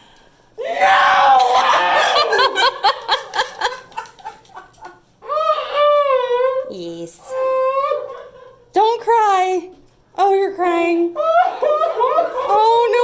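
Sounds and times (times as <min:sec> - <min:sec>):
excited laughing: 0:01.4 - 0:05.0.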